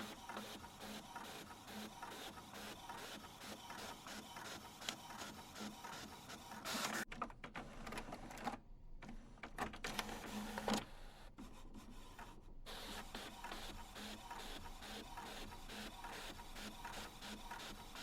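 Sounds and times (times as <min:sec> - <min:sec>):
printer mechanical ticking: 0:00.0 - 0:18.0.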